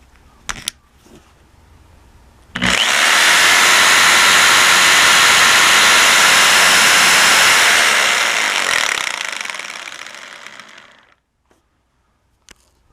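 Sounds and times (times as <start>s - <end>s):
electric drill whining: 2.6s - 11.2s.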